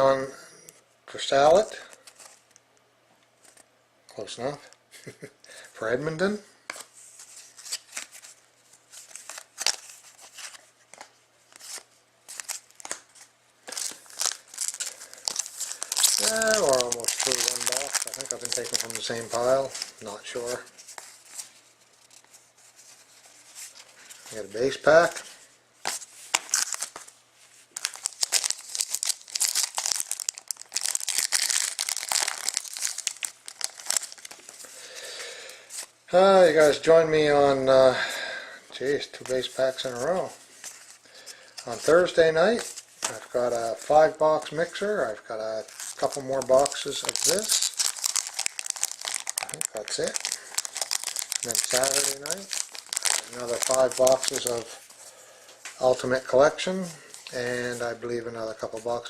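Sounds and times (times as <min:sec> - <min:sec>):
wrapper crinkling and tearing: 0:08.9 - 0:10.6, 0:11.5 - 0:21.6, 0:25.9 - 0:35.0, 0:39.7 - 0:55.0.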